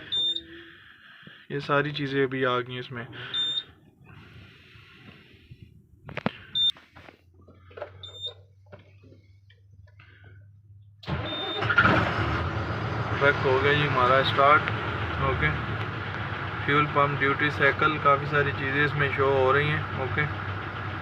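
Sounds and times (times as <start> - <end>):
short high beeps: 0.0 - 0.5, 3.4 - 3.6
diesel engine cranking and starting: 11.0 - 21.0.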